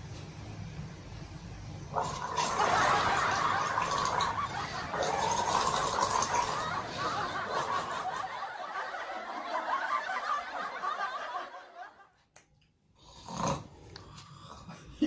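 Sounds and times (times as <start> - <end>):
quiet human laughter: 2.5 - 12.2.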